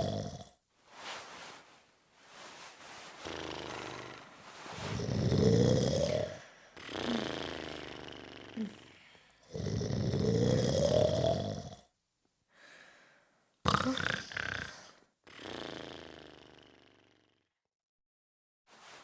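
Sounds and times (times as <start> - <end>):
person snoring: 0.0 - 0.5, 3.2 - 11.8, 13.7 - 16.8.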